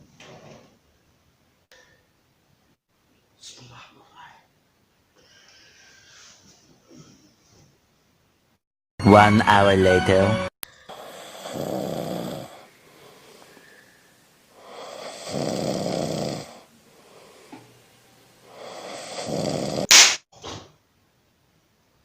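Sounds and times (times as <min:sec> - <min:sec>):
person snoring: 0:10.8 - 0:13.6, 0:14.6 - 0:17.6, 0:18.5 - 0:19.9.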